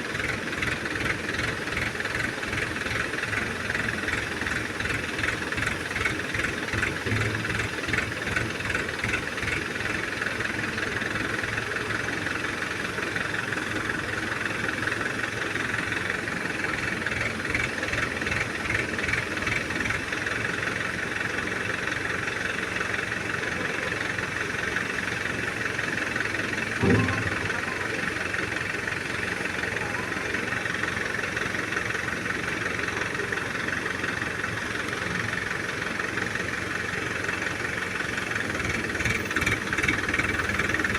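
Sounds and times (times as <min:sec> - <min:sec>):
diesel engine running: 0:00.0 - 0:40.9
short clunk: 0:26.8 - 0:28.1.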